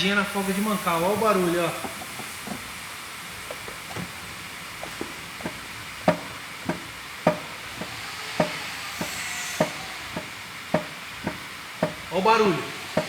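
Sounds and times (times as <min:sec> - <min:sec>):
steady hiss: 0:00.0 - 0:13.0
metallic knocks of engine crankshaft: 0:04.8 - 0:12.1.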